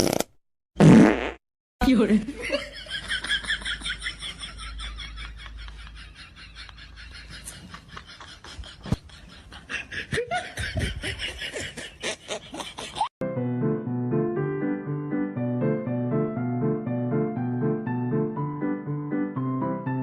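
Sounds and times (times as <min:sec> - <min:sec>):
laughter in quick bursts: 0:02.4 - 0:13.1
piano music: 0:13.2 - 0:20.0.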